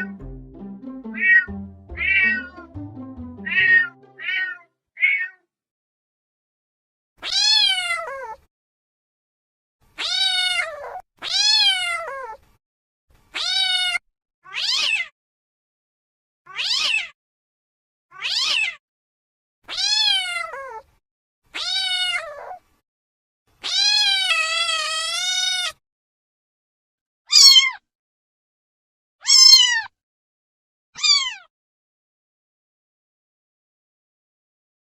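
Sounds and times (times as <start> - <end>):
cat meowing: 10.0 - 12.3, 13.4 - 14.0, 19.7 - 20.7, 21.6 - 22.6, 23.6 - 24.4.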